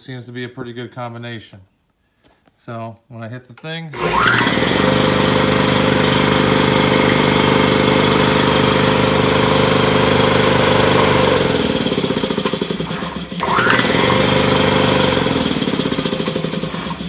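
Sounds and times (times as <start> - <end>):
air compressor running: 4.0 - 17.0.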